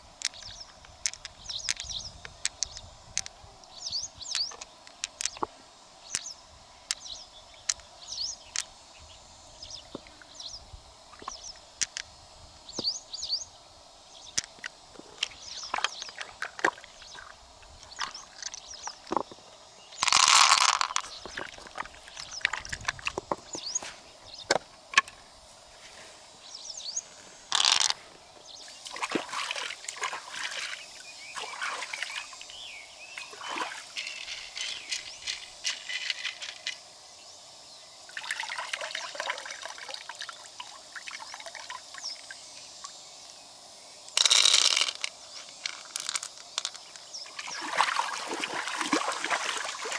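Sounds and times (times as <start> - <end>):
mussel shells clicking: 0.2 - 3.3, 4.3 - 5.5, 11.2 - 12.1, 14.3 - 19.4, 20.0 - 23.7, 27.5 - 28.0, 44.1 - 47.1
water splashing and pouring: 28.9 - 30.8, 31.4 - 32.4, 38.1 - 41.8, 47.4 - 49.9.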